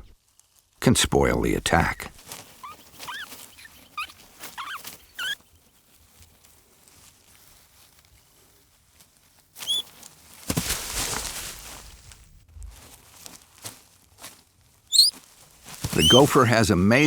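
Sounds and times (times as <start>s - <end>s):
small animal squeaking: 2.4s - 5.7s, 9.6s - 9.9s, 14.9s - 15.2s, 15.8s - 17.0s.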